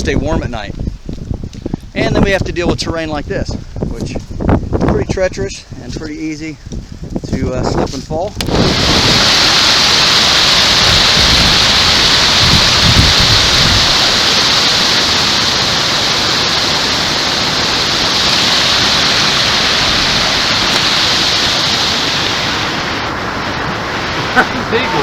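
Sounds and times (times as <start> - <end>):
water rushing: 8.4 - 25.0.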